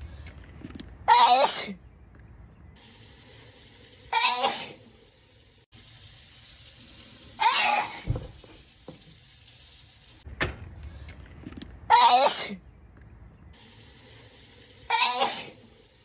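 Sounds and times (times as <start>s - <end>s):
person sneezing: 14.9s - 15.6s.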